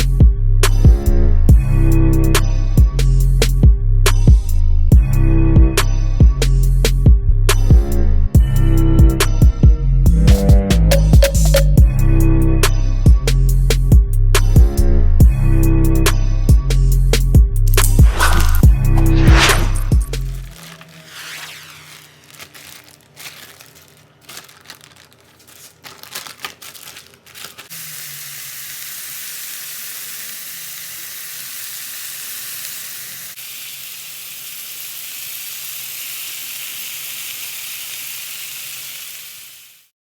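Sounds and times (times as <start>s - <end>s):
food sizzling in a pan: 27.7s - 39.9s.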